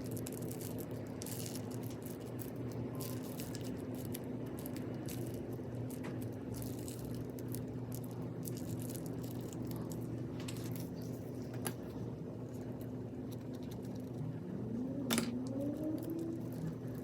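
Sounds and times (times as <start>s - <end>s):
crunchy slime crackling: 0.0s - 11.9s, 15.4s - 17.0s
steady low hum: 0.0s - 17.0s.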